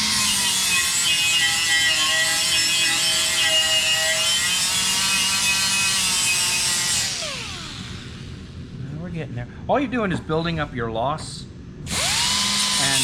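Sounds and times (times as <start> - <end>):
grinder whining: 0.0 - 8.4, 11.9 - 13.0.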